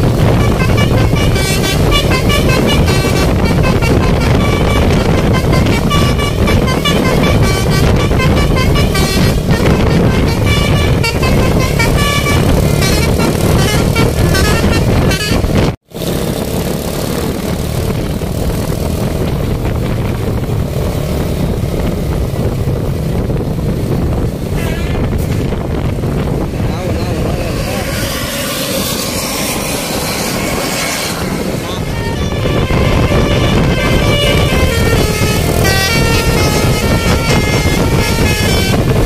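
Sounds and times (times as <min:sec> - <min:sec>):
musical bus horn tune: 0:00.0 - 0:15.8, 0:24.4 - 0:25.9, 0:27.2 - 0:39.0
engine and road rumble: 0:00.0 - 0:39.0.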